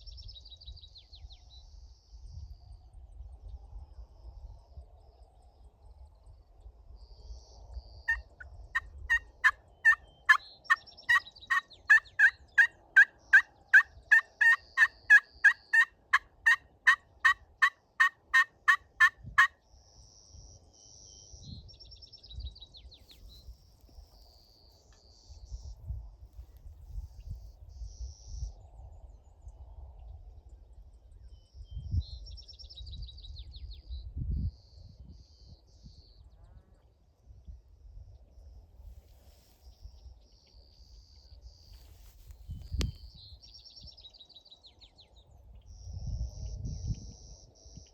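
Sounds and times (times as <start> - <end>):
turkey yelps: 9.1 - 19.1.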